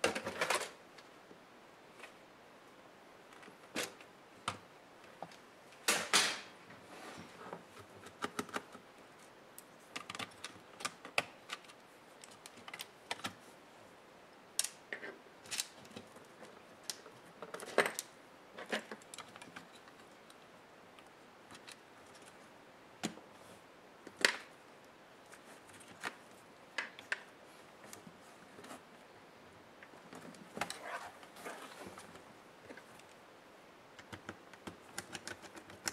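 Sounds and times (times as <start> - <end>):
plastic and metal parts clattering: 0.0 - 0.8.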